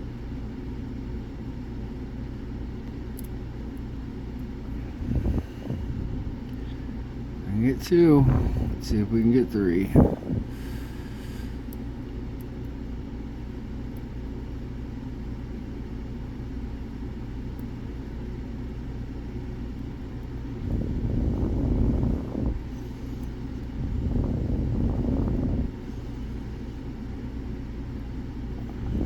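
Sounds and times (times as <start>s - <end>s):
steady low rumble: 3.4s - 29.0s.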